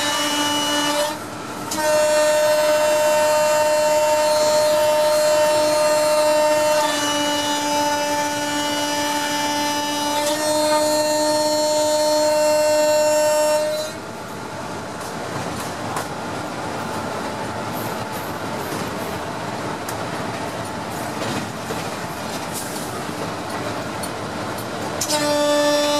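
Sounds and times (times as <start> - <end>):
locomotive horn long blast: 0.0 - 14.1, 25.0 - 25.9
train rumble and wheel clatter: 0.0 - 25.9.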